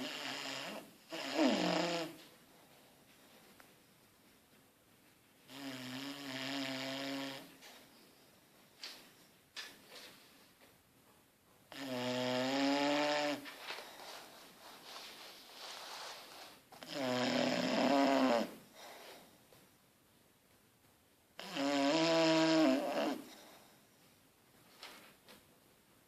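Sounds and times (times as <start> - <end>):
dog snoring: 0.0 - 2.2, 5.5 - 7.6, 11.7 - 13.5, 16.8 - 19.1, 21.4 - 23.6
faint dog breathing: 18.6 - 19.5.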